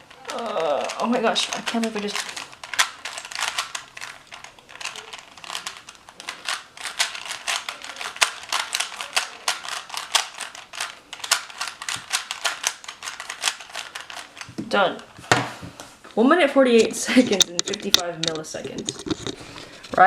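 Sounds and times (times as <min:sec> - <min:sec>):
puzzle cube plastic clicking: 0:00.0 - 0:14.6.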